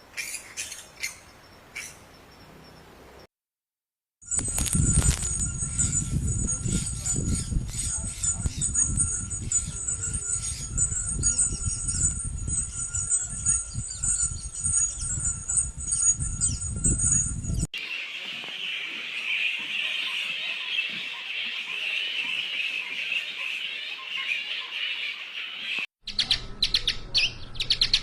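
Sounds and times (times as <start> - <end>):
bats squeaking: 4.3 - 18.5.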